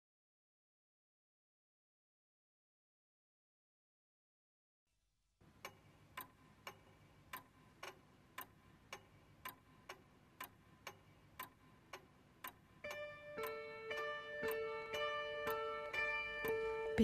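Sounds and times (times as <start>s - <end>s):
clock ticking: 5.4s - 17.0s.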